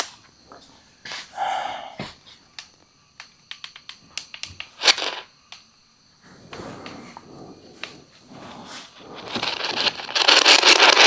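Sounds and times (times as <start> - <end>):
breathy puff: 1.0 - 2.4, 6.2 - 11.0
equipment clicks and taps: 2.6 - 5.6.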